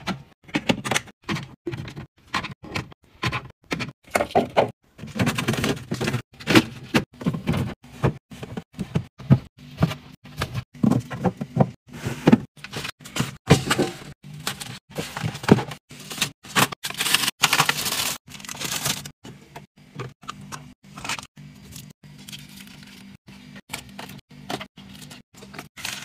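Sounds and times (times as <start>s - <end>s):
items knocking and tapping: 0.0s - 15.8s
packaging rustling: 14.5s - 19.1s.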